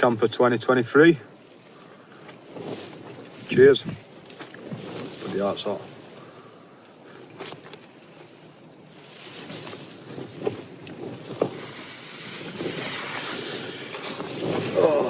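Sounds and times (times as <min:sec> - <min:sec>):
tent fabric flapping: 0:02.4 - 0:06.2, 0:07.2 - 0:15.0
wind gust: 0:09.1 - 0:15.0.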